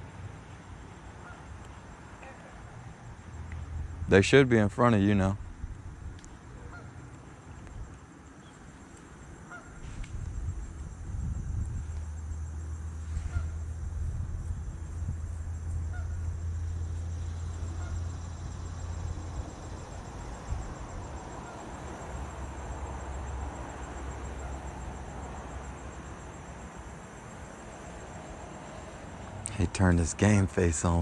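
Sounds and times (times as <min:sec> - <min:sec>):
insects buzzing: 0:00.0 - 0:31.0
wind rumble on microphone: 0:05.2 - 0:06.8, 0:09.5 - 0:30.4.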